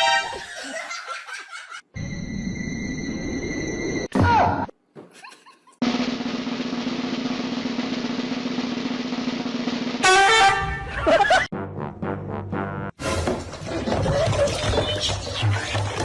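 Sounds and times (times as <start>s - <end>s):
drum roll: 5.8s - 11.5s.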